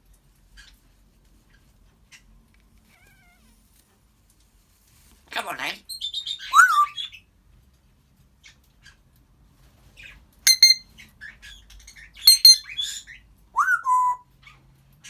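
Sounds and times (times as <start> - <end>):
parrot high calls and chirps: 6.2 - 7.1, 10.5 - 10.8, 12.3 - 12.6
parrot whistle: 6.5 - 7.0, 10.5 - 10.8, 12.3 - 12.6, 13.6 - 14.2.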